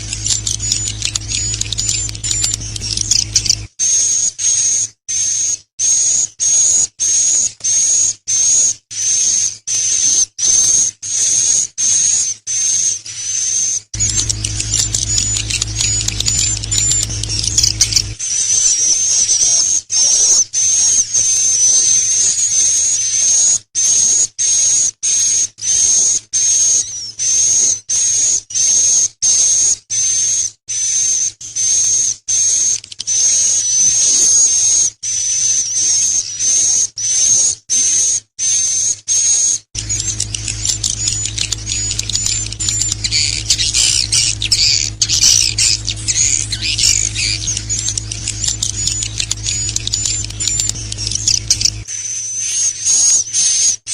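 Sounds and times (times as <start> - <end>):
high bird chirps: 0.0 - 3.7, 14.0 - 18.5, 39.2 - 53.8
steady low hum: 0.0 - 3.7, 14.0 - 18.2, 39.8 - 51.9
high-pitched bird calls: 0.0 - 10.2, 11.1 - 24.6, 31.6 - 53.9.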